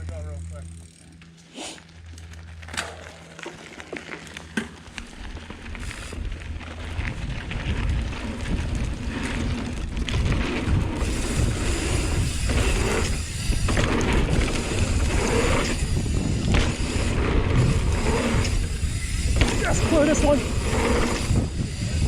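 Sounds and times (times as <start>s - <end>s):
bike clicks and rattles: 0.0s - 22.0s
tyres rumbling on dirt: 3.5s - 22.0s
wind on microphone: 6.8s - 22.0s.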